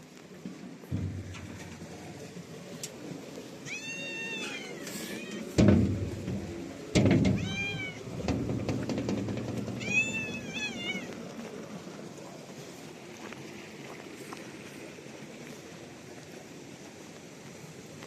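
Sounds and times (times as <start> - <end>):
low thumps: 0.8 - 2.4, 5.5 - 10.6
cat meowing: 3.6 - 5.6, 7.4 - 8.0, 9.8 - 11.1.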